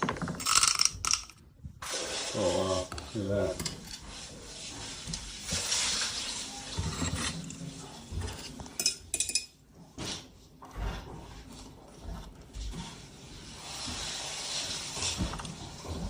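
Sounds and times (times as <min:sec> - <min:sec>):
kitchen utensils and dishes clinking: 0:00.0 - 0:11.9.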